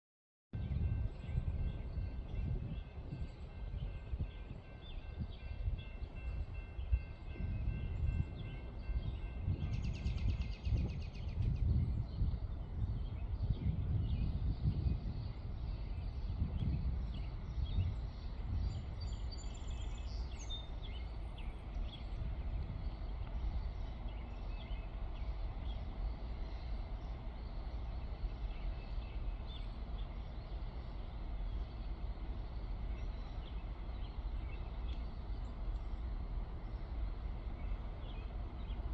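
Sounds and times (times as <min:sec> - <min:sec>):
distant freight train rumbling: 0:00.6 - 0:38.9
birds chirping: 0:12.2 - 0:38.9.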